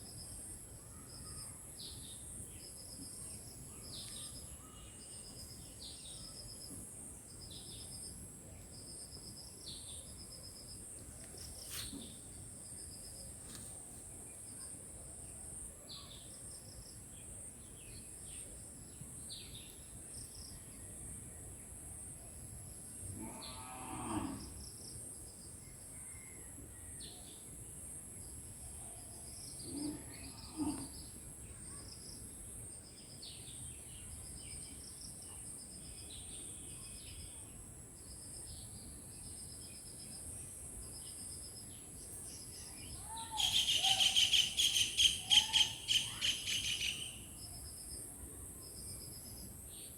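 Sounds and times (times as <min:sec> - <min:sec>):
bird chirps: 0:42.8 - 0:47.3.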